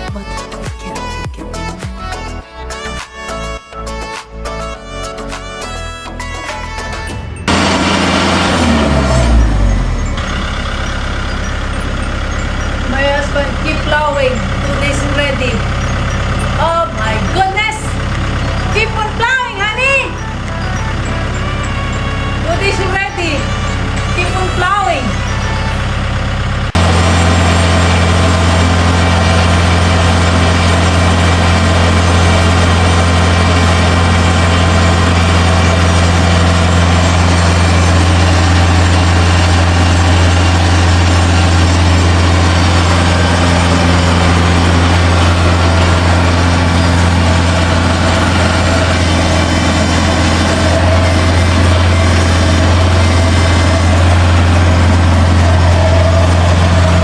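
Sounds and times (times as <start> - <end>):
snowplow engine humming: 0.0 - 57.0.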